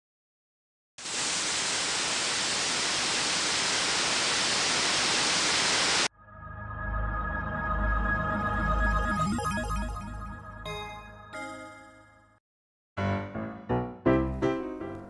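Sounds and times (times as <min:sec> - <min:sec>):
music: 0:06.1 - 0:12.4, 0:13.0 - 0:15.0.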